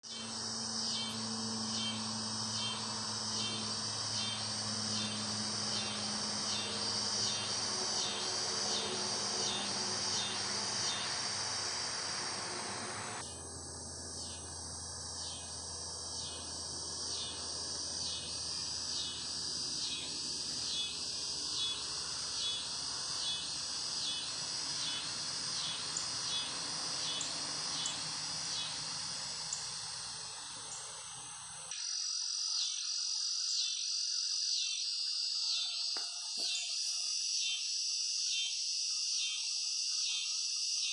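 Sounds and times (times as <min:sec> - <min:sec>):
cicadas buzzing in chorus: 0:00.0 - 0:40.9
low background hum: 0:00.1 - 0:31.7.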